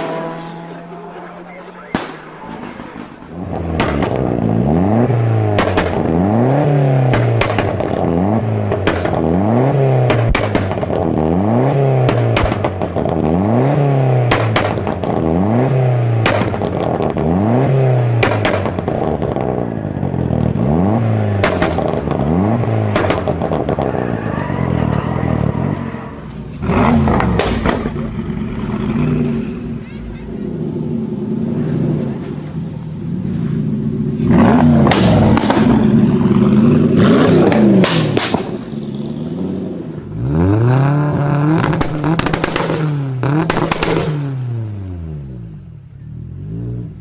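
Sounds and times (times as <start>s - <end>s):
car engine revving: 0.0s - 47.0s
exhaust pops and cracks: 1.9s - 4.4s, 5.5s - 6.1s, 7.0s - 8.1s, 8.7s - 9.3s, 10.0s - 11.2s, 12.0s - 13.3s, 14.2s - 15.3s, 16.2s - 17.3s, 18.2s - 19.6s, 21.4s - 24.1s, 26.3s - 28.5s, 34.8s - 36.2s, 37.3s - 38.7s, 41.3s - 44.3s
loud bang: 26.2s - 30.6s, 34.7s - 36.3s.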